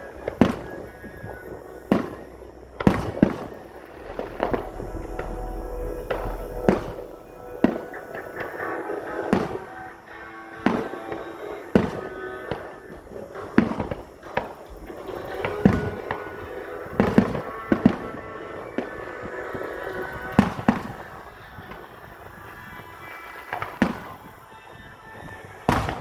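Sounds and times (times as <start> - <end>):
fireworks booming: 0.0 - 26.0
music playing: 0.0 - 26.0.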